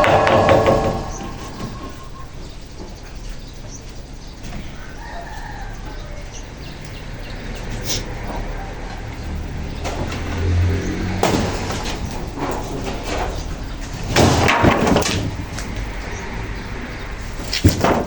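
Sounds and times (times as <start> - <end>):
sharp knock: 0.0 - 2.0
building materials scraping: 0.0 - 2.4, 9.8 - 16.2.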